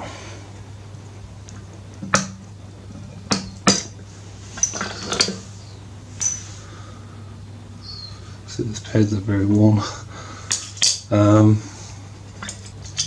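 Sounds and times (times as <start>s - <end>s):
metallic clinks of brake pads: 6.2s - 6.6s.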